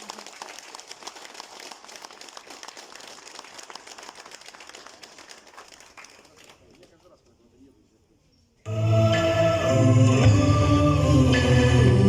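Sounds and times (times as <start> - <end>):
crowd applauding: 0.0 - 7.0.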